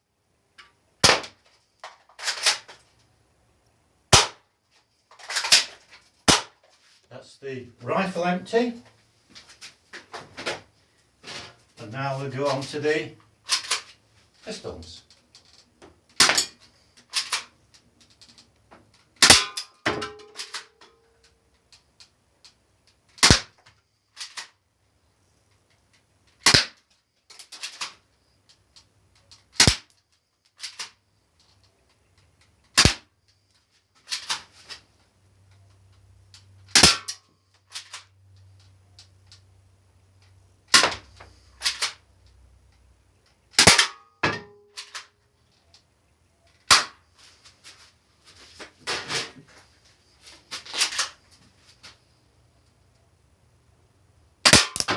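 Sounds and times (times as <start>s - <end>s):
pellets hitting targets: 1.0s - 1.4s, 4.1s - 4.4s, 5.3s - 6.6s, 16.1s - 16.6s, 19.2s - 20.6s, 23.2s - 23.5s, 29.6s - 29.8s, 54.4s - 54.9s
toy pistol cracks: 1.0s - 1.4s, 4.1s - 4.4s, 16.2s - 17.5s, 19.2s - 19.7s, 23.2s - 23.6s, 26.4s - 26.8s, 29.5s - 29.9s, 32.7s - 33.1s, 36.7s - 37.2s, 43.6s - 44.0s, 54.5s - 54.9s.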